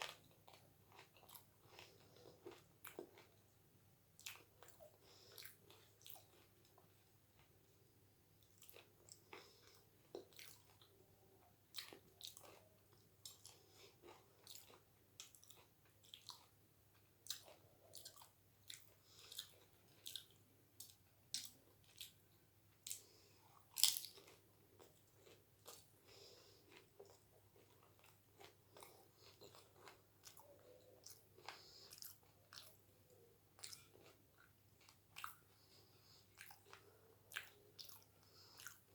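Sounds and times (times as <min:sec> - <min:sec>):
crunching crisp shells while chewing: 0:00.0 - 0:03.4, 0:11.7 - 0:22.2, 0:22.8 - 0:38.9.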